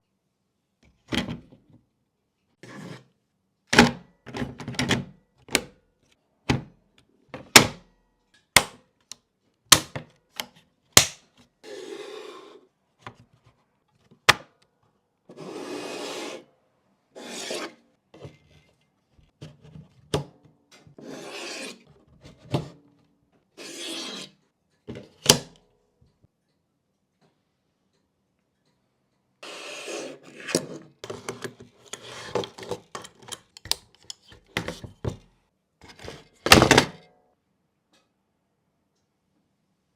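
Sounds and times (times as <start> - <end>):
rubbing or scraping sounds: 15.3 - 16.5, 17.2 - 20.0, 21.0 - 22.6, 23.5 - 24.4.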